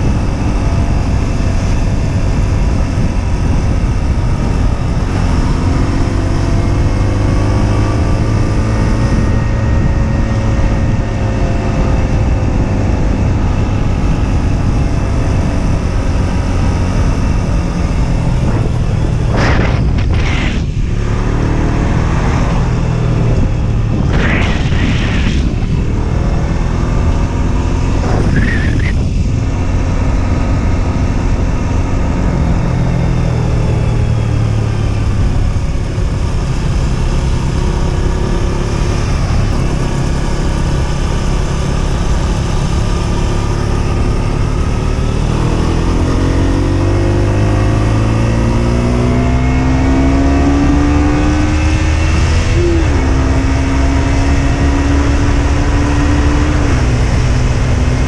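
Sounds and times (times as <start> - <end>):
motorcycle engine accelerating: 0.0 - 58.0
wind rumble: 0.0 - 58.0.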